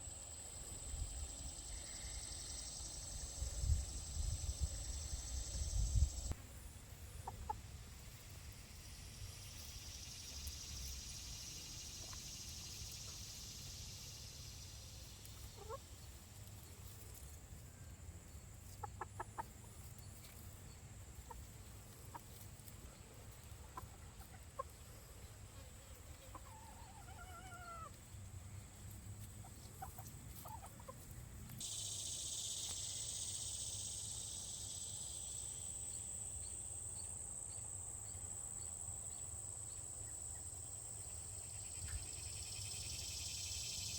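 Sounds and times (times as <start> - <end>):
insects trilling: 0.0 - 17.0, 31.6 - 43.9.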